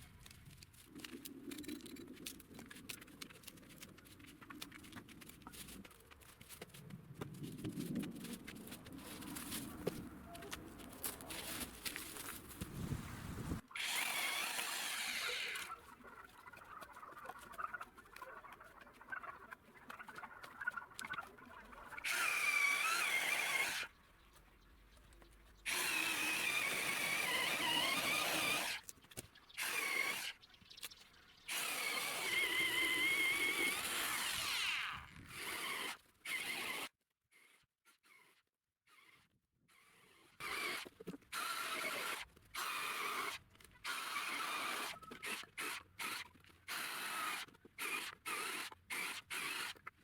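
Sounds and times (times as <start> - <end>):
power tool whining: 13.6 - 15.8, 21.9 - 23.9, 25.7 - 28.9, 29.6 - 30.4, 31.5 - 49.9.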